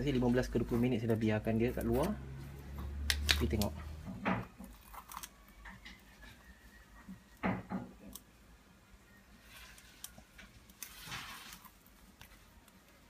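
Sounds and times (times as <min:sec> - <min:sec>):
soft scraping: 0:10.8 - 0:12.0.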